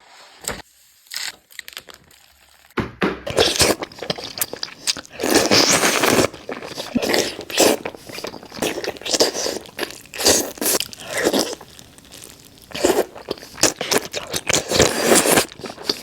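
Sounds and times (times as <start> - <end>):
crunchy biting and chewing: 3.3 - 16.0.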